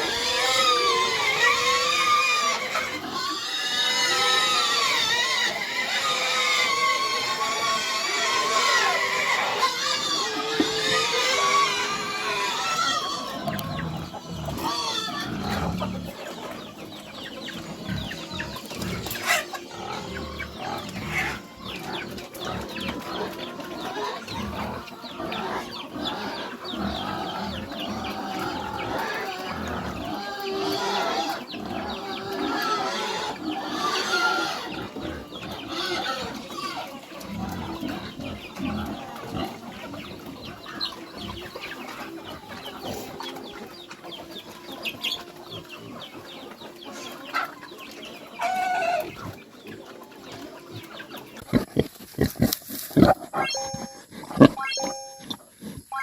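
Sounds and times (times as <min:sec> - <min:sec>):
farm animals calling: 0:00.0 - 0:56.0.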